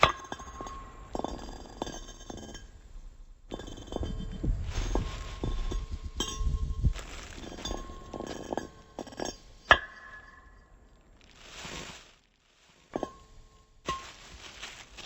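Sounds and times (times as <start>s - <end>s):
glass clinking: 5.0s - 6.8s, 7.4s - 10.5s, 13.0s - 14.2s.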